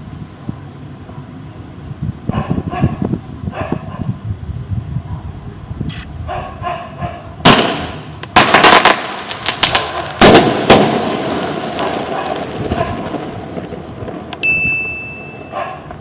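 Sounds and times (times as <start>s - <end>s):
firework crackle and echo: 7.4s - 16.0s
firework sharp bangs: 7.4s - 16.0s.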